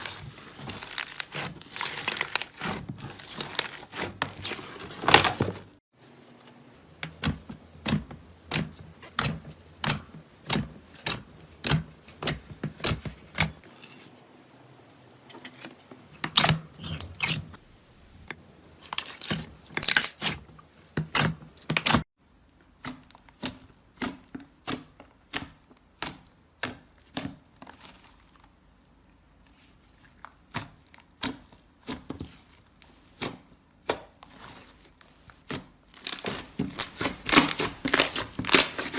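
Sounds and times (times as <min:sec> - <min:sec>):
slime popping and crackling: 0:00.0 - 0:04.2.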